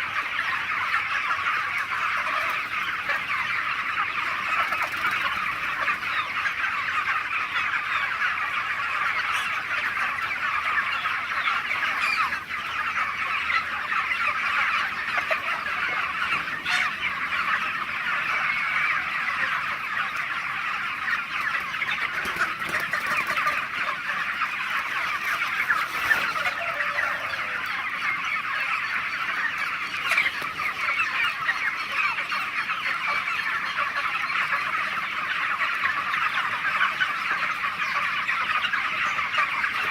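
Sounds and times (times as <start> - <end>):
flock of chickens clucking: 0.0 - 39.9.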